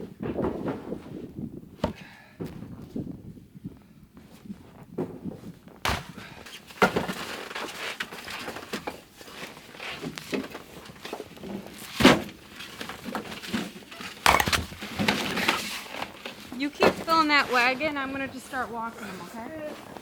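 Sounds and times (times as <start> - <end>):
firewood knocking: 14.2 - 15.2.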